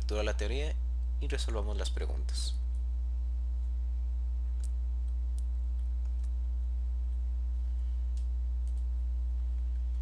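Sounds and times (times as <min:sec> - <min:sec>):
low electrical hum: 0:00.0 - 0:10.0
sharp computer clicks: 0:08.2 - 0:08.9.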